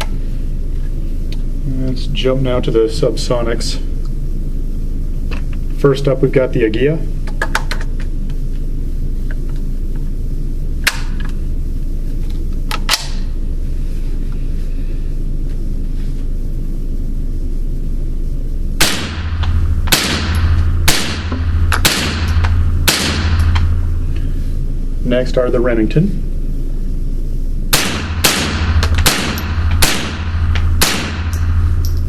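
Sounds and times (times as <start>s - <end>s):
steady low hum: 0.0s - 32.0s
rifle shots echoing indoors: 18.8s - 24.0s, 27.7s - 32.0s.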